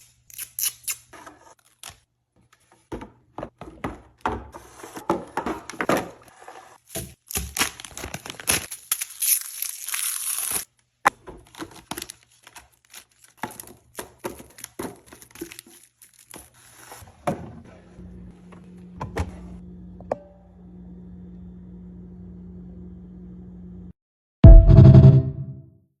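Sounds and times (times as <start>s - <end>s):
plastic packaging crinkling: 6.9s - 10.7s, 11.4s - 16.9s.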